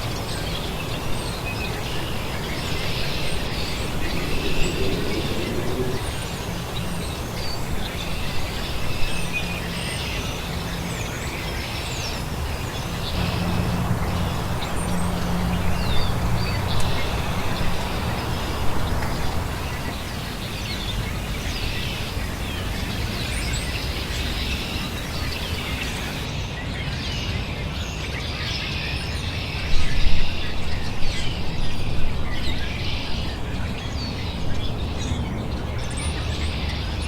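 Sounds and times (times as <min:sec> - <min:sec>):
songbirds chirping: 0:00.0 - 0:37.0.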